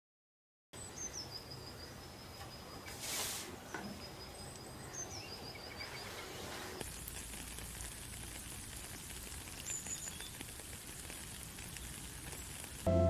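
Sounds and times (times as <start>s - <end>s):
steady hiss like rain: 0.9s - 13.0s
bird chirps: 3.7s - 6.5s, 9.6s - 10.4s.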